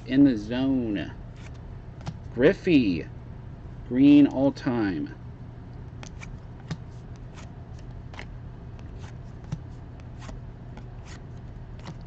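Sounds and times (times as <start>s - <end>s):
low steady hum: 0.0s - 12.0s
cards flicking: 6.0s - 12.0s.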